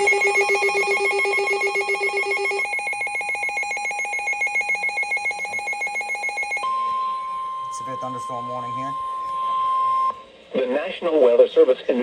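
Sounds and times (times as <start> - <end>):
fast trilling electronic alert tone: 0.0 - 9.3.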